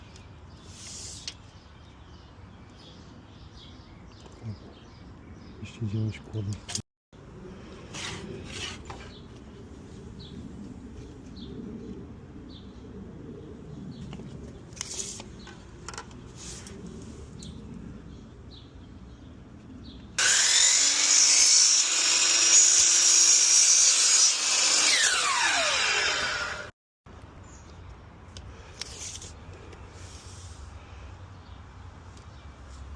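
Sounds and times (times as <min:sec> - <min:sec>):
power saw cutting wood: 0:20.2 - 0:26.8.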